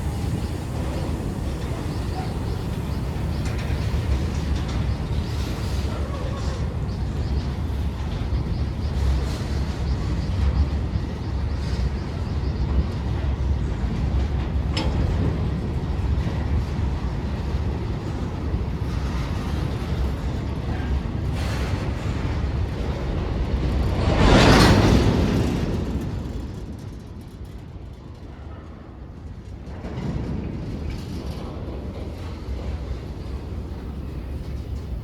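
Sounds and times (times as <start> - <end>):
train rumbling past: 0.0 - 35.0.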